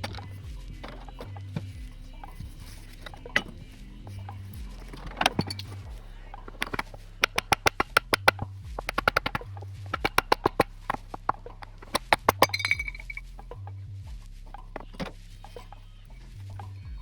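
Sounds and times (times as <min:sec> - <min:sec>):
sharp taps and clicks on rake: 0:00.0 - 0:13.3, 0:14.8 - 0:16.8
background music with bass line: 0:00.0 - 0:17.0.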